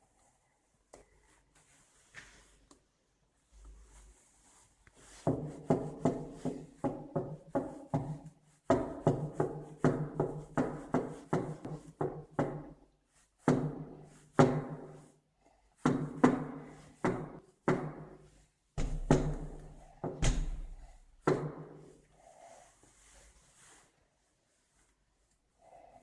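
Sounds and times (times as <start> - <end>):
knocking on a door: 5.3 - 12.8, 13.5 - 14.9, 15.8 - 18.1, 18.8 - 21.8.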